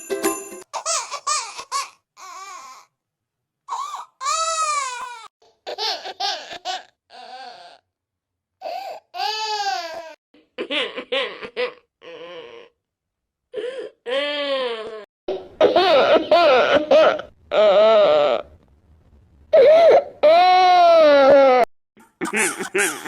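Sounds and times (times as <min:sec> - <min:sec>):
baby crying: 0:00.8 - 0:02.9, 0:03.7 - 0:07.8, 0:08.6 - 0:10.2, 0:19.6 - 0:21.7.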